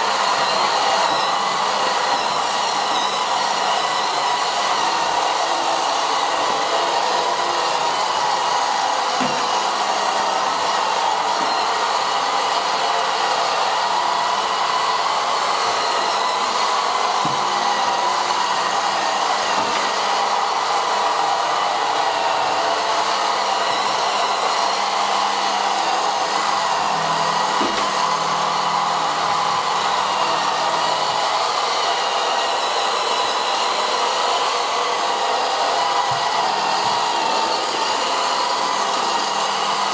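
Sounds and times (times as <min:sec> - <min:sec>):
robotic vacuum cleaner whirring: 0:00.0 - 0:39.9
high whining tones: 0:24.7 - 0:31.3.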